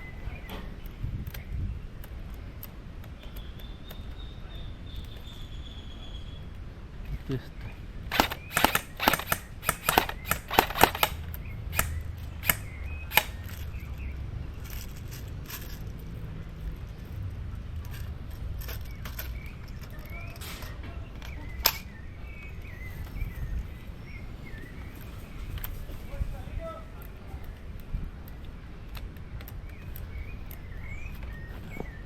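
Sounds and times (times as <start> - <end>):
airsoft gun shots: 8.1 - 13.4.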